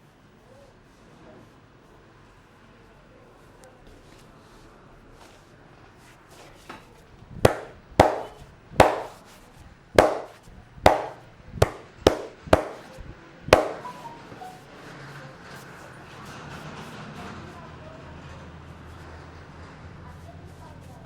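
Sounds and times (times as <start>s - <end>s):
hands slapping head and shoulders: 7.5s - 9.2s, 10.0s - 12.9s, 13.6s - 14.0s.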